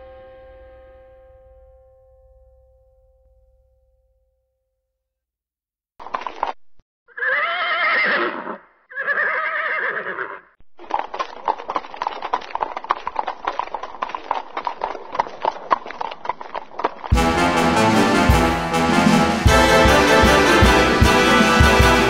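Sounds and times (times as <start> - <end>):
horse neighing: 7.1 - 10.5
hooves clip-clopping: 10.8 - 22.0.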